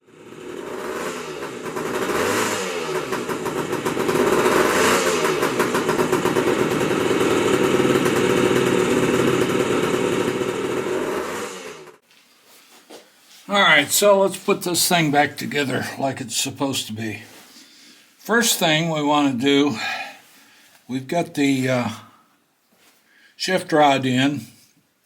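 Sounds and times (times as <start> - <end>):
motorcycle engine revving: 0.0 - 12.0.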